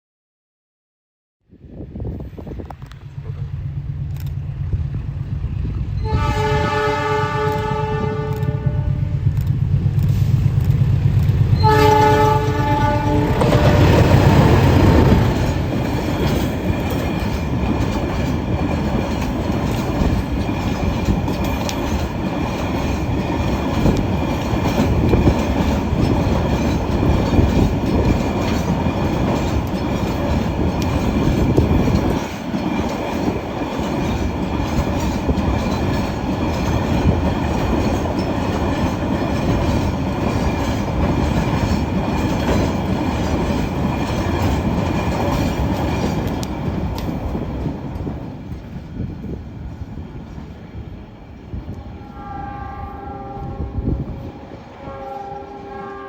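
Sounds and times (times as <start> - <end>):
train rolling past: 1.6 - 56.0
locomotive engine rumble: 1.9 - 52.0
locomotive horn: 6.0 - 9.3, 11.6 - 15.6, 51.9 - 56.0
wheels clattering over rail joints: 13.4 - 48.7.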